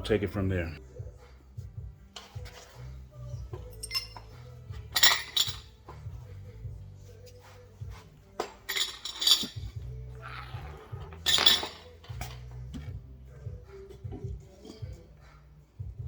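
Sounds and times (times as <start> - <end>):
metal hand tools clinking: 3.7 - 5.8, 8.4 - 9.9, 11.1 - 12.4.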